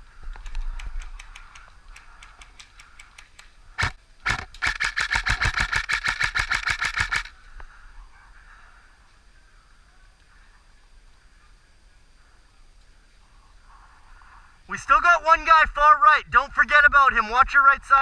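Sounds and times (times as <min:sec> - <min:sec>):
faint clicks of shots: 0:00.3 - 0:07.3
airsoft gun shots: 0:03.8 - 0:07.3.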